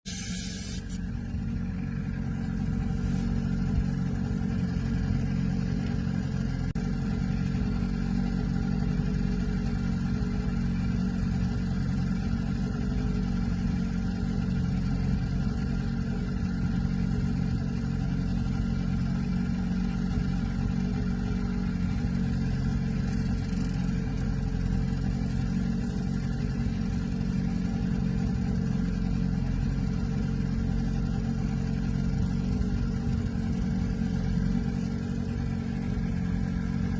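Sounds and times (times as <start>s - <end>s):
boat engine droning: 0.0s - 36.9s.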